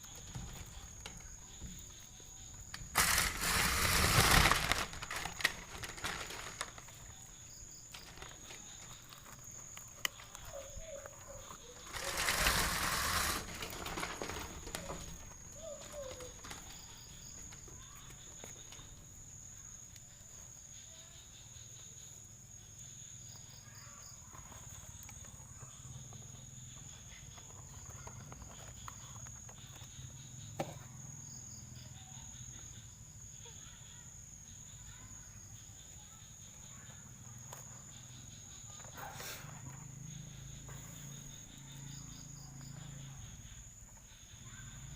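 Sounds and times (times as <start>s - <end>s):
insects droning: 0.0s - 44.9s
loud noisy burst: 2.9s - 5.3s.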